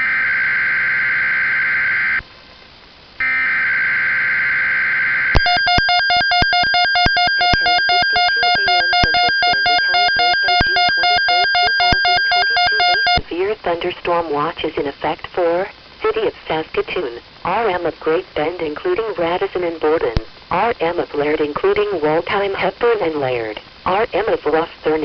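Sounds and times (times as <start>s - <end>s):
screeching digital data tones: 3.2s - 13.2s.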